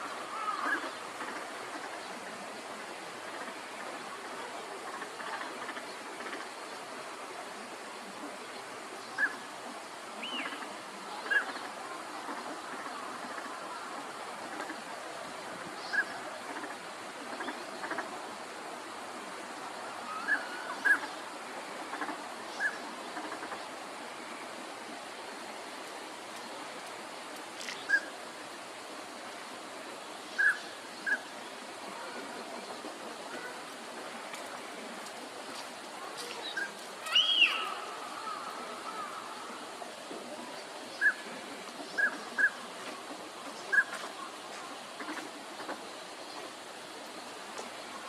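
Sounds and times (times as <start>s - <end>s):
steady background hiss: 0.0s - 48.0s
ducks whistled calls: 36.4s - 37.8s.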